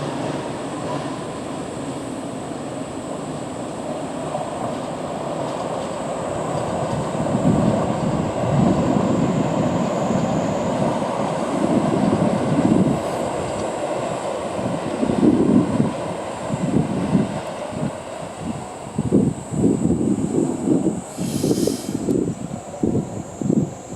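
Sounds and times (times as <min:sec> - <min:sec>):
train wheels rumbling on track: 0:00.0 - 0:23.9.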